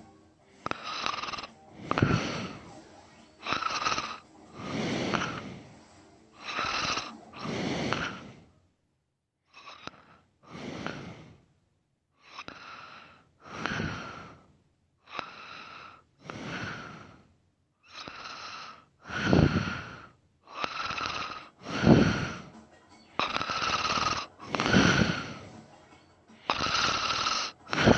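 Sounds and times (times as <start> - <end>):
man snoring: 0.6 - 2.7, 3.4 - 5.7, 6.4 - 8.5, 9.6 - 11.4, 12.2 - 14.5, 15.1 - 17.2, 17.9 - 22.5, 23.2 - 25.6, 26.4 - 27.9.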